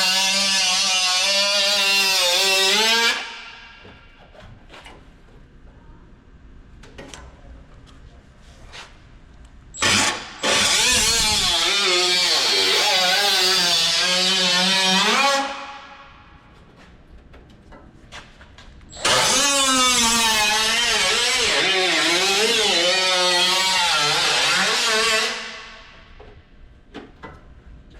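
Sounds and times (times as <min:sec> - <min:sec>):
power tool cutting sheet metal: 0:00.0 - 0:03.8, 0:09.8 - 0:16.1, 0:18.9 - 0:26.2.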